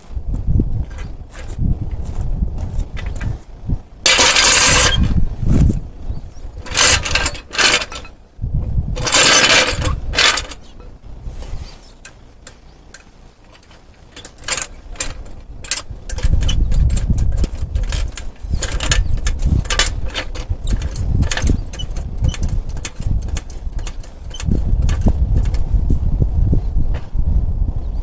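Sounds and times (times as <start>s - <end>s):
heavy low rumble: 0.0s - 28.0s
hand tools clicking and clanking: 0.8s - 5.2s, 6.6s - 8.2s, 9.0s - 11.0s, 11.9s - 25.7s.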